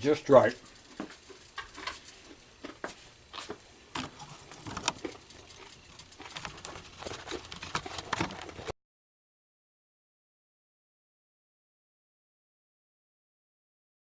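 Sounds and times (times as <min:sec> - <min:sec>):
objects clicking and knocking: 0:00.6 - 0:02.9, 0:03.9 - 0:08.7.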